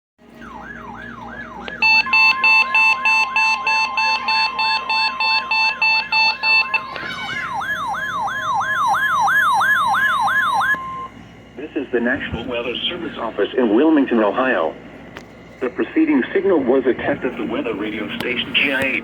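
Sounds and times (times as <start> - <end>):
electronic siren falling in pitch: 0.4 - 11.2
steady alarm tone: 0.4 - 11.5
rapid beeping: 1.0 - 11.2.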